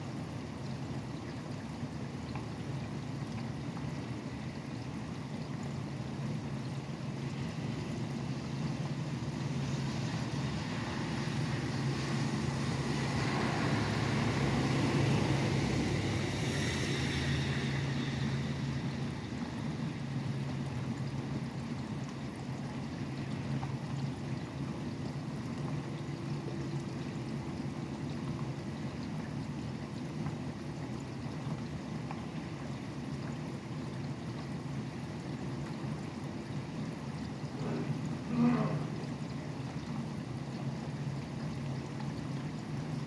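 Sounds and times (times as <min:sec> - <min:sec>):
steady rain: 0:00.0 - 0:43.0
highway traffic: 0:07.3 - 0:20.8
vehicle passing: 0:10.0 - 0:19.4.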